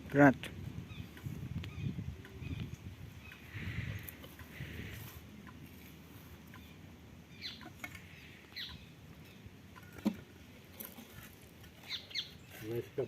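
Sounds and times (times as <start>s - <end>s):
faint bird chirps: 6.5s - 9.5s.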